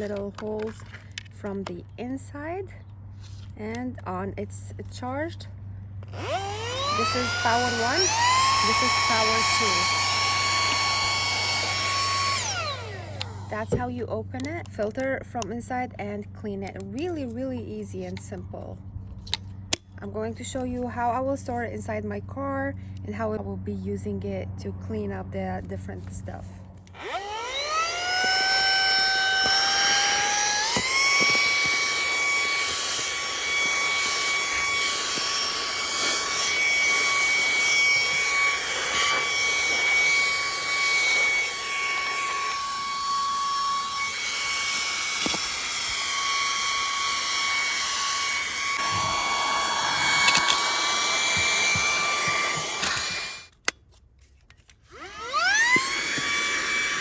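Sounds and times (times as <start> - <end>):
handheld vacuum cleaner motor whine: 6.0 - 13.9, 26.9 - 53.7, 54.8 - 57.0.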